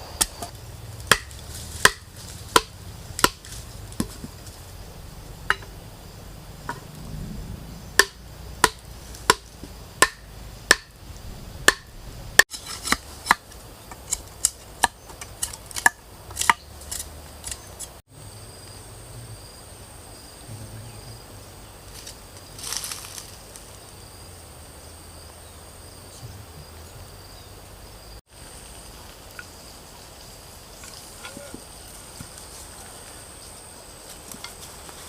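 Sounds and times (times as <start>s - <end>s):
insects chirring: 0.0s - 35.0s
chopping strikes on wood: 1.1s - 4.3s, 5.5s - 5.7s, 8.0s - 11.0s, 11.6s - 11.9s, 14.4s - 17.6s.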